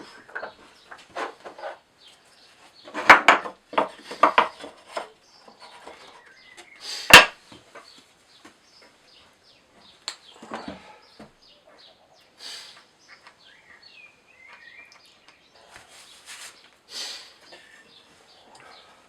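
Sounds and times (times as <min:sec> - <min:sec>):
timber and tools clattering: 0:00.0 - 0:01.9, 0:02.6 - 0:08.0, 0:10.3 - 0:11.3.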